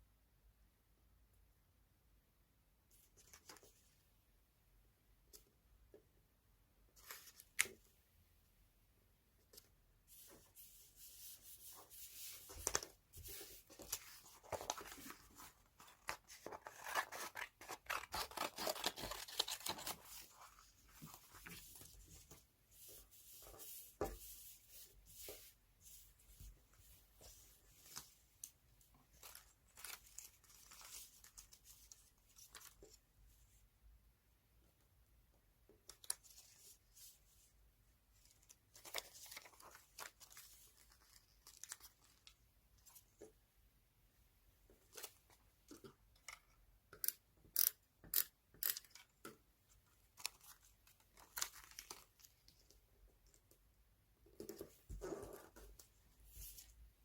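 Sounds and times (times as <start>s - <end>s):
paper rustling and tearing: 12.0s - 20.4s.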